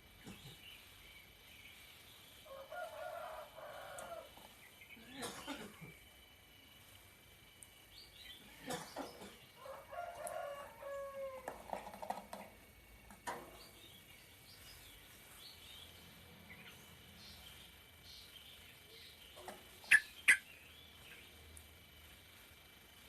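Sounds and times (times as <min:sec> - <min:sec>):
rooster crowing: 0:02.4 - 0:04.6, 0:09.6 - 0:11.7
bird chirping: 0:13.6 - 0:21.5.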